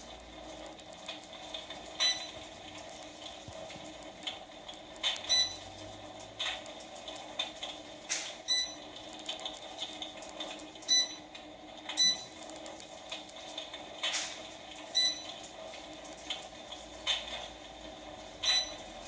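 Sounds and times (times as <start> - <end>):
electric fireplace crackles: 0.0 - 19.0.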